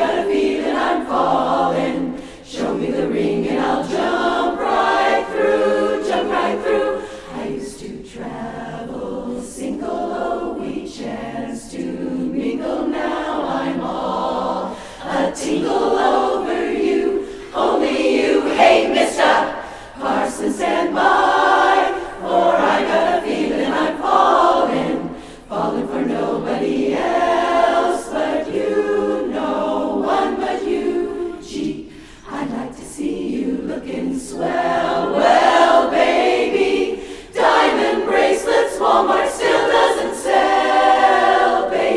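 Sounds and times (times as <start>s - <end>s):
a cappella chorus singing: 0.0s - 41.9s.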